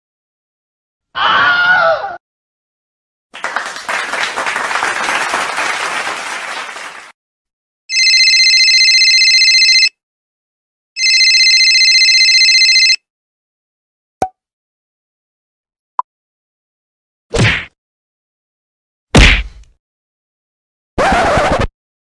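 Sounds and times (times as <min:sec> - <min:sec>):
applause: 0:03.4 - 0:07.2
telephone ringing: 0:07.9 - 0:10.0, 0:11.0 - 0:13.0.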